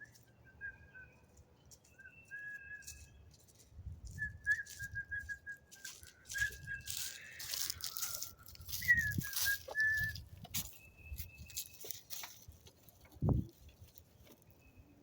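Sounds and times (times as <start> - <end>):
rustling or scuffing noise: 1.7 - 14.7
high thin whistled notes: 4.2 - 11.7.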